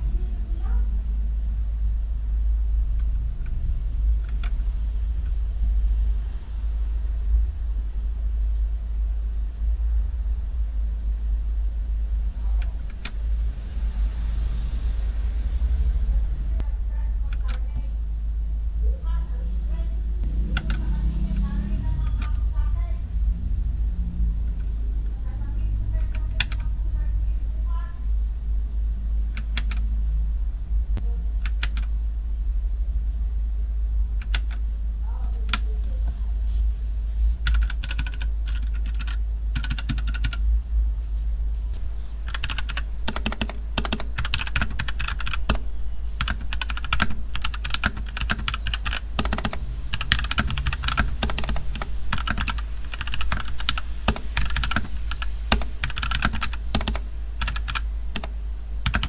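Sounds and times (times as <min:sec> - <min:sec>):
steady low hum: 0:00.0 - 0:59.0
clicky mechanical keyboard typing: 0:17.3 - 0:17.9, 0:20.3 - 0:22.9, 0:25.7 - 0:26.8, 0:29.2 - 0:29.8, 0:31.4 - 0:31.9, 0:34.2 - 0:34.6, 0:37.4 - 0:40.4, 0:41.8 - 0:59.0.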